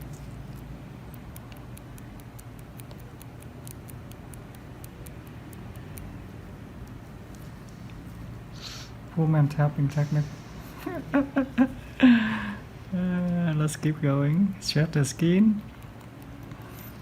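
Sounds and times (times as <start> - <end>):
low steady hum: 0.0 - 17.0
microblading blade ticking: 0.6 - 7.4, 13.6 - 16.6.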